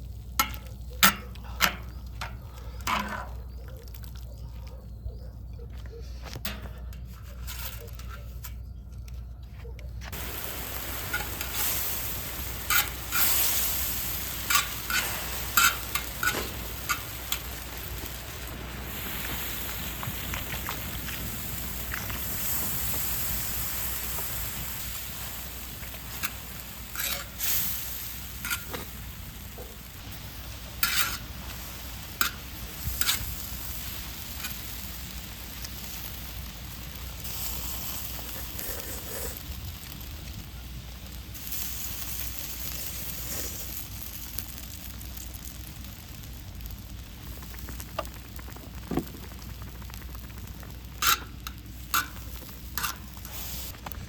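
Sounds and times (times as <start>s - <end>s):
soup bubbling and sizzling: 0.0s - 4.8s, 10.0s - 54.0s
utensil clicking against pan: 51.0s - 53.4s.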